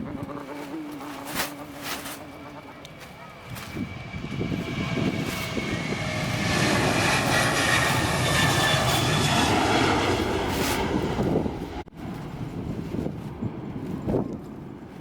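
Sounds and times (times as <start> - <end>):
engine whining tones: 0.0 - 11.8
jet engines passing: 0.8 - 15.0.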